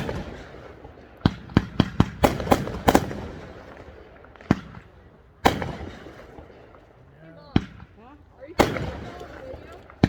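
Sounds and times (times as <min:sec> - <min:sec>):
fireworks bangs with echo: 0:00.0 - 0:06.8, 0:07.5 - 0:10.0.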